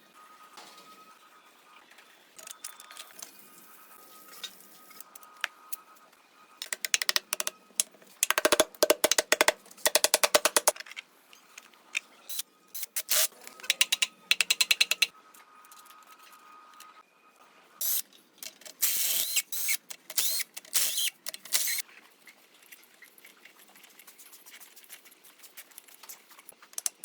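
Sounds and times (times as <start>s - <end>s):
rapid mechanical clicking: 6.6s - 10.8s, 13.6s - 15.1s.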